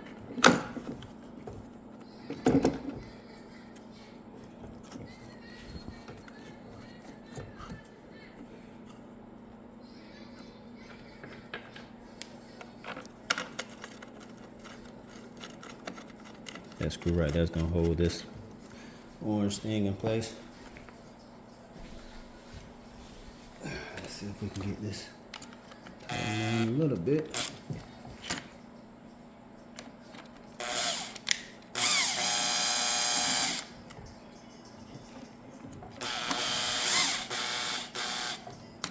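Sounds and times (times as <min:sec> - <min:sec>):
small parts clicking and knocking: 0:12.8 - 0:18.2
power drill driving screw: 0:26.1 - 0:26.7, 0:27.3 - 0:27.6, 0:30.6 - 0:33.8, 0:36.0 - 0:38.5
drill click: 0:30.6 - 0:33.7, 0:36.0 - 0:38.4.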